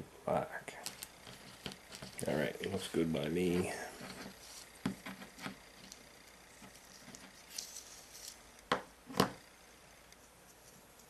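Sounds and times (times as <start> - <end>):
handling wires and parts: 0.7 - 9.5.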